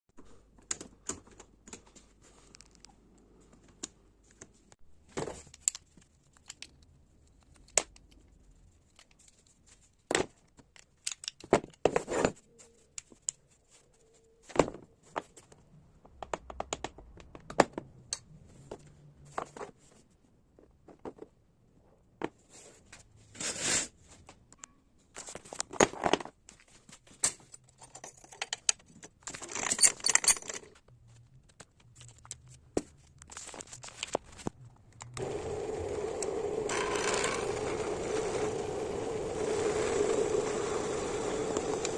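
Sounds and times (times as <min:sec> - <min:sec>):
small hard parts handled: 0:05.1 - 0:13.8, 0:25.2 - 0:35.2
longer scraping noises: 0:35.2 - 0:41.9.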